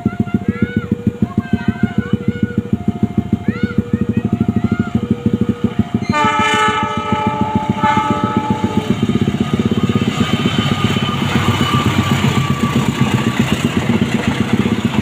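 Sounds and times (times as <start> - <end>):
low rapid throbbing: 0.0 - 15.0
train horn multi-tone chord: 6.0 - 9.2.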